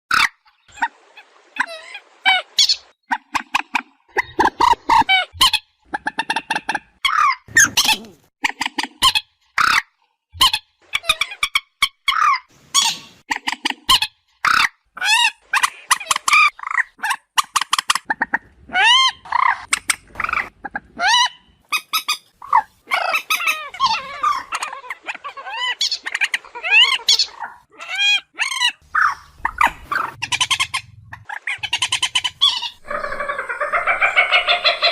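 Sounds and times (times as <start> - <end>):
moorhen calling: 10.4 - 34.9.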